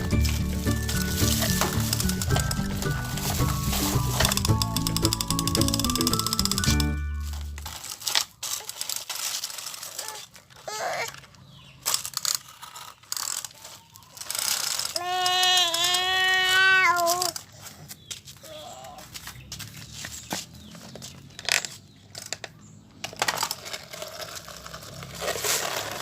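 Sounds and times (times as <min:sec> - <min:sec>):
tune playing: 0:00.0 - 0:07.8
small child crying: 0:10.0 - 0:11.2, 0:14.9 - 0:17.4, 0:18.4 - 0:19.1.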